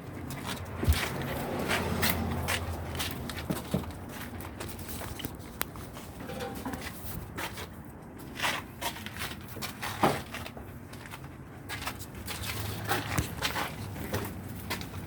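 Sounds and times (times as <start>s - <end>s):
taps and scuffs: 0.1s - 15.0s.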